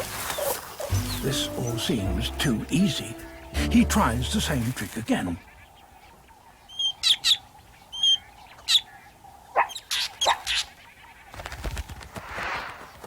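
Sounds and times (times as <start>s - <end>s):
bird alarm calls: 0.0s - 11.2s
rustling rush of noise: 11.7s - 13.0s.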